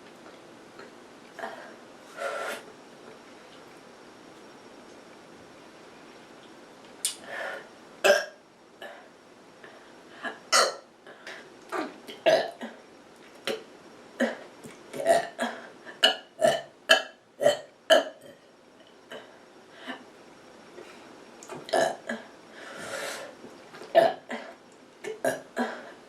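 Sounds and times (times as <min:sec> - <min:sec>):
person burping: 0:08.0 - 0:08.4, 0:10.5 - 0:10.8, 0:11.7 - 0:12.8, 0:14.2 - 0:18.4, 0:21.6 - 0:22.3, 0:23.9 - 0:24.5, 0:25.1 - 0:25.8.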